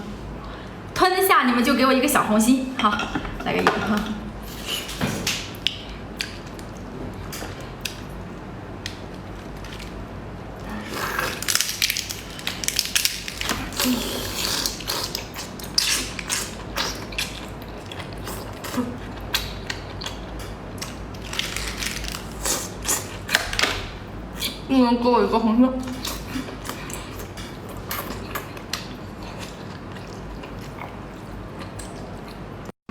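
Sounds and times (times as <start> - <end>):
crunchy chewing: 10.6 - 23.4.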